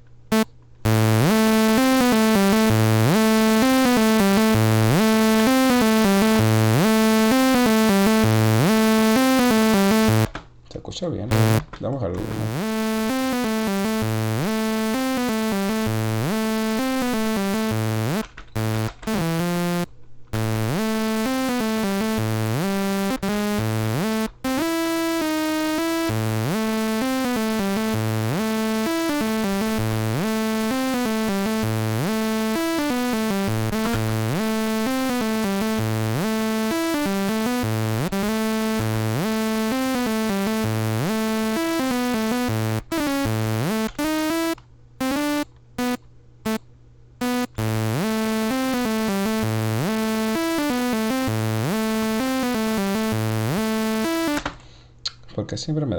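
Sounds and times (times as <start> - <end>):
electronic synthesizer melody: 0.3 - 10.3, 11.3 - 11.6, 12.2 - 46.6, 47.2 - 54.4
short bass notes: 11.3 - 11.6, 12.2 - 46.6.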